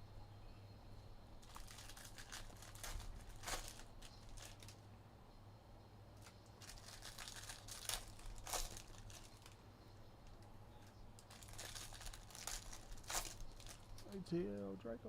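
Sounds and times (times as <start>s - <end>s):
card wrappers crinkling: 1.4s - 4.8s, 6.2s - 9.6s, 10.2s - 14.6s.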